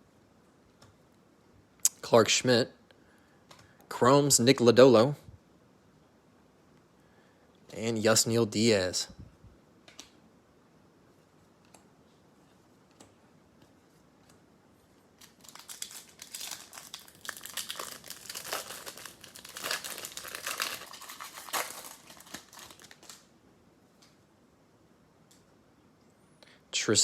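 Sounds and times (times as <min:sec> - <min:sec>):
wrapper tearing and crinkling: 0:15.2 - 0:23.3.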